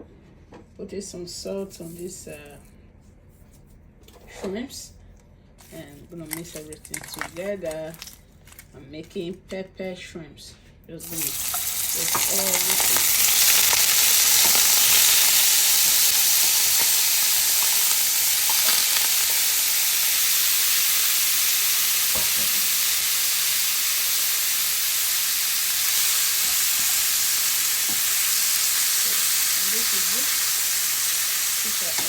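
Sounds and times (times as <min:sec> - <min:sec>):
shrimp sizzling in oil: 0:11.0 - 0:32.0.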